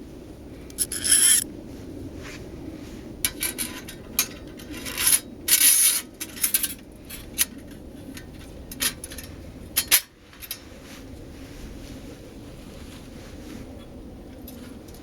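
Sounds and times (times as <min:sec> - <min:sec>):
metal scrape: 0:00.7 - 0:01.4
sharp metal clinks: 0:00.7 - 0:01.4.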